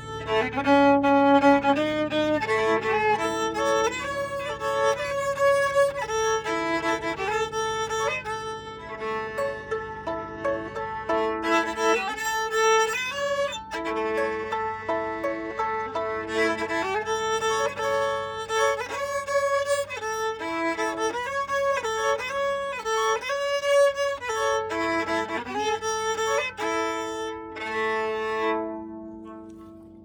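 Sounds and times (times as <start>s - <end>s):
fiddle melody with double stops: 0.0s - 30.0s.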